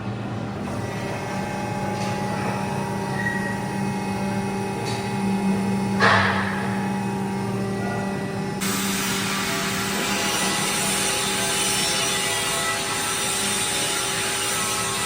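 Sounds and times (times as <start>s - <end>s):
machine drive hum: 0.0s - 15.0s
clank and hiss: 6.0s - 6.8s.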